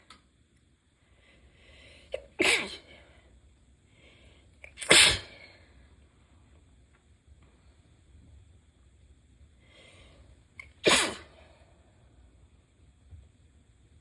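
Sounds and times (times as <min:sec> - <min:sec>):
person sneezing: 0:02.1 - 0:03.0, 0:04.7 - 0:05.6, 0:10.6 - 0:11.5.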